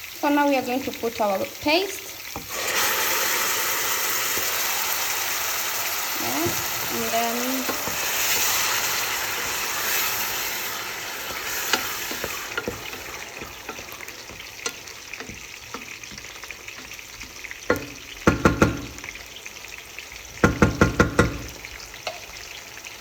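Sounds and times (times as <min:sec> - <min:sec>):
paste sizzling in hot oil: 0:00.0 - 0:23.0
spoon knocking against pan: 0:06.4 - 0:06.8, 0:07.6 - 0:08.6, 0:11.2 - 0:19.2, 0:20.4 - 0:22.4.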